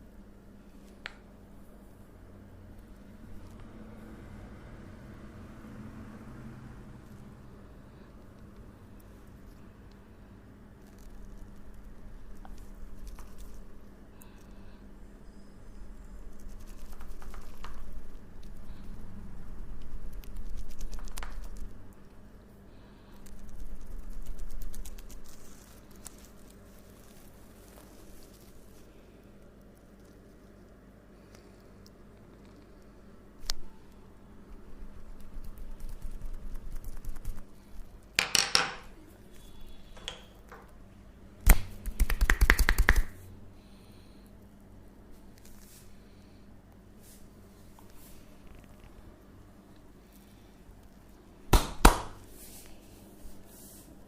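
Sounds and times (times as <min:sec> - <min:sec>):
hands rubbing skin and hair: 0:12.4 - 0:13.7, 0:16.4 - 0:18.2, 0:23.4 - 0:28.9, 0:34.9 - 0:37.7, 0:41.5 - 0:43.2, 0:51.9 - 0:54.0
rubbing and patting: 0:16.3 - 0:18.2, 0:34.8 - 0:37.7, 0:41.5 - 0:43.2
hands slapping body: 0:41.4 - 0:43.2, 0:51.5 - 0:52.2
rapid percussive massage strikes: 0:41.5 - 0:43.2, 0:51.5 - 0:52.2.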